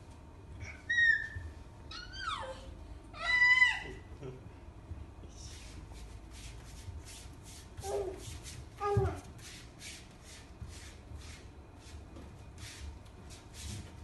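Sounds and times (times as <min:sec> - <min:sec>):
baby squealing: 0:00.7 - 0:02.6, 0:03.2 - 0:04.0.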